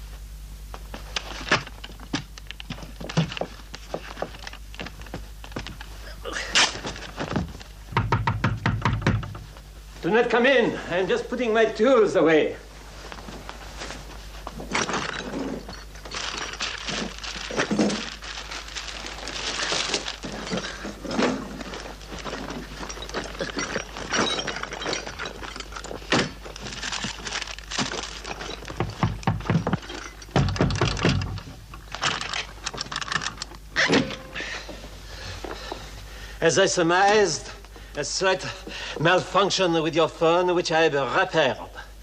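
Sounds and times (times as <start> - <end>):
objects clattering and breaking: 14.6 - 34.4.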